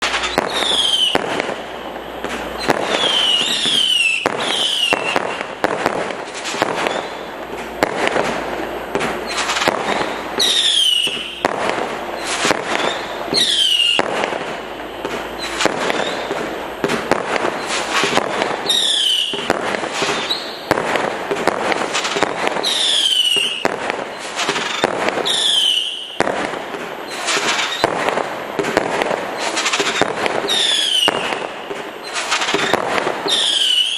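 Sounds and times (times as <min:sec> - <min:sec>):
fireworks popping and banging: 0:00.0 - 0:33.9
firework whistles dropping in pitch: 0:00.1 - 0:05.6, 0:06.7 - 0:07.3, 0:09.2 - 0:11.5, 0:12.2 - 0:16.4, 0:17.6 - 0:20.7, 0:22.6 - 0:26.2, 0:30.4 - 0:33.9.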